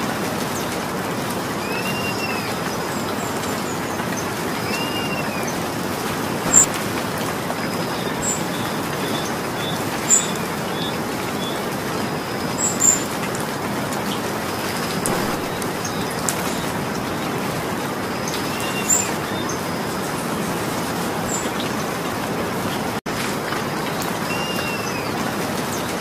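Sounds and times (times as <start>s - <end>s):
steady rainfall hissing: 0.0s - 26.0s
drops striking sharply: 15.0s - 15.8s
faint bird chirps: 15.1s - 16.7s.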